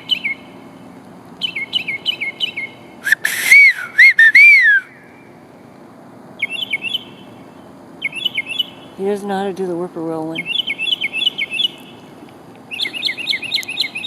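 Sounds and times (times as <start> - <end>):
mockingbird chirps: 0.0 - 0.5, 1.4 - 5.1, 6.4 - 9.0, 10.3 - 14.0
person whistling bird call: 3.0 - 4.9.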